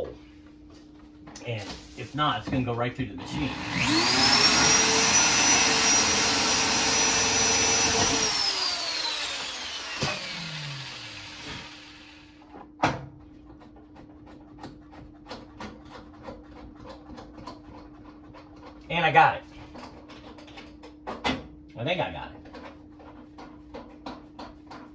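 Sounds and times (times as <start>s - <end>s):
power drill whining: 3.2s - 12.4s.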